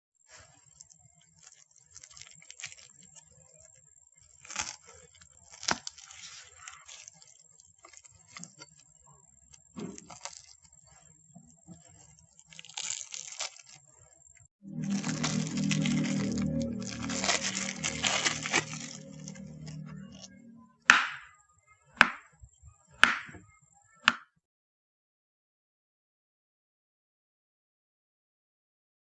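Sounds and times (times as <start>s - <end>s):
rustling: 0.3s - 20.4s.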